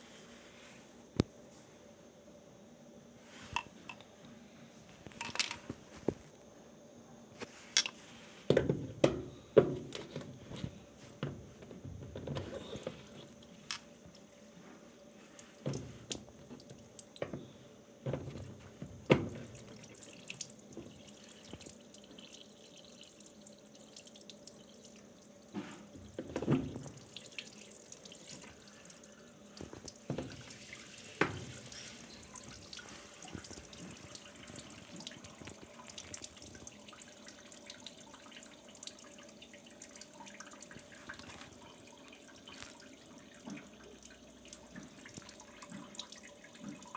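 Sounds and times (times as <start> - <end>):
water trickling: 18.0 - 46.9.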